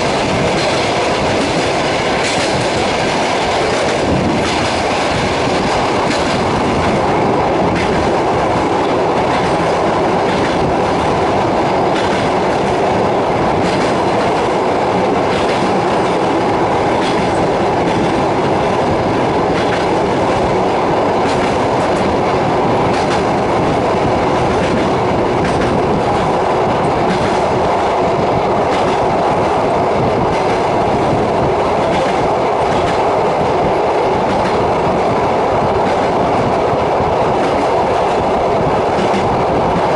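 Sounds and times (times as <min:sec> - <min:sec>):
train wheels rumbling on rails: 0:00.0 - 0:39.9
clicks over rail joints: 0:17.0 - 0:18.5.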